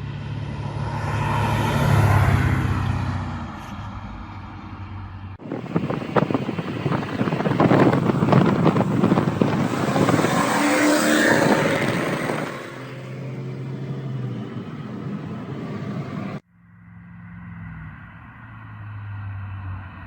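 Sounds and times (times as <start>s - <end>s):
car engine running under load: 5.4s - 16.4s.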